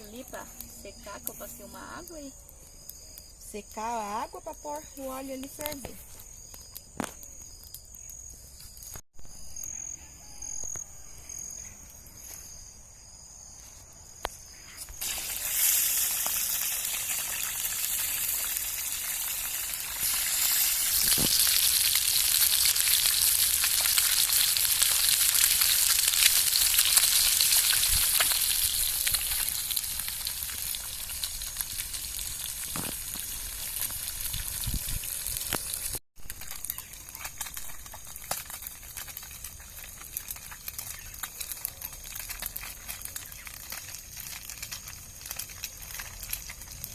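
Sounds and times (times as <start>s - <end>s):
crickets chirping: 0.0s - 31.9s
frying pan sizzling: 15.0s - 46.9s.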